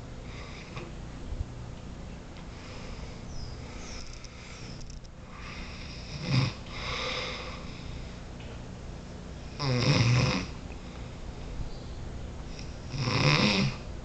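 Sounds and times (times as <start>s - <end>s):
soft breath: 2.5s - 6.1s, 6.7s - 8.3s
man snoring: 5.3s - 7.7s, 9.5s - 10.6s, 12.6s - 13.8s.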